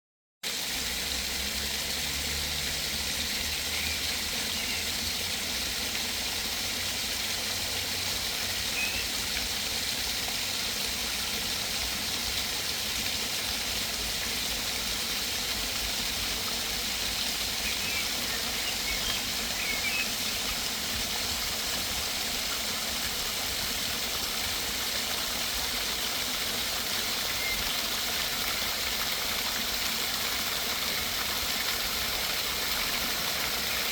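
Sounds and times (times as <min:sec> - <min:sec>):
small waterfall splashing: 0:00.4 - 0:33.9
bird chirps: 0:17.6 - 0:20.1.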